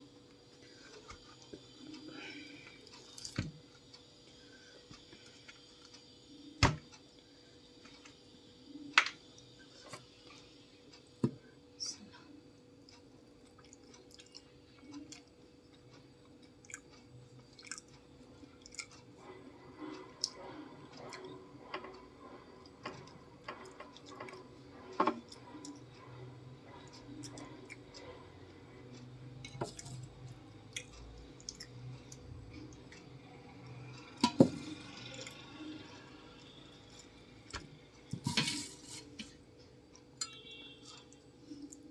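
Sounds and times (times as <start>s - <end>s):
faint steady hum: 0.0s - 41.9s
wet chewing: 16.3s - 19.1s.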